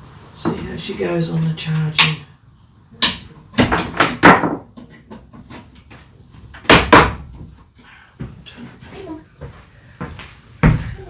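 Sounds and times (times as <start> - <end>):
sharp knocks and bangs: 3.0 - 5.2, 6.6 - 7.5.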